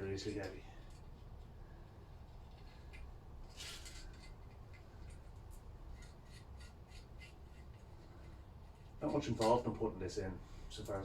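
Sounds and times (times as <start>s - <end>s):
low steady hum: 0.0s - 11.0s
scrape on engine parts: 2.3s - 9.6s.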